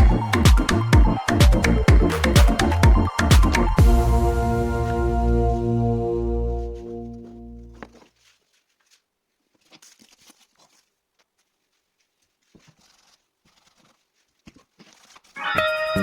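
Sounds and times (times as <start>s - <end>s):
background music: 0.0s - 7.8s, 15.4s - 16.0s
faint clicks and rustles: 6.8s - 15.4s.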